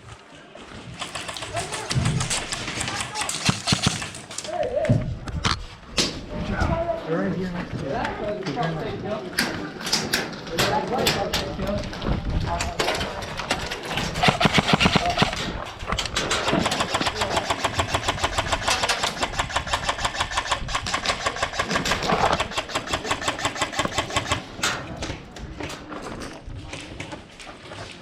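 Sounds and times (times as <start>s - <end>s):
airsoft gun firing: 1.0s - 4.3s, 14.1s - 15.5s, 16.2s - 24.6s.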